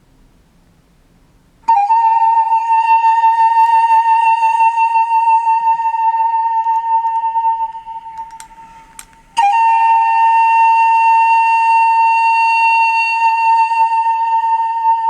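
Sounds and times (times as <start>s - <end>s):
held music note: 1.8s - 11.4s.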